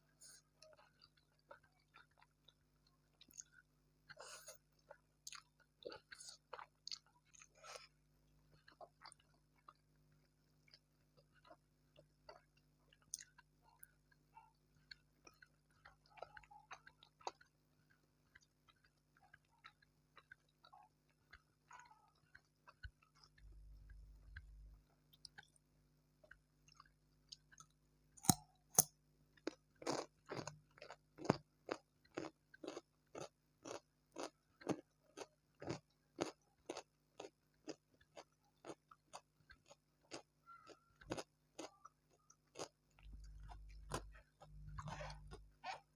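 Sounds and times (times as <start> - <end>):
soft chewing mouth sounds: 0.0 - 45.9
crunchy chewing: 0.2 - 25.6, 26.2 - 45.9.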